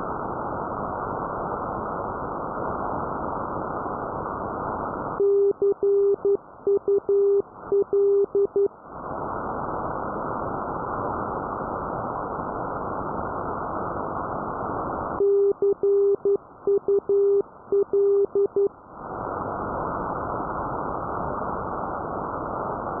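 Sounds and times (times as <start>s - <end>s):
morse code tone: 5.2s - 8.7s, 15.2s - 18.7s.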